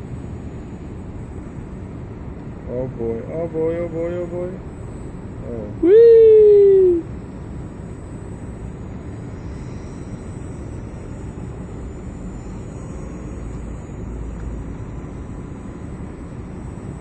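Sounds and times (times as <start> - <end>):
airboat propeller whine and rumble: 0.0 - 17.0.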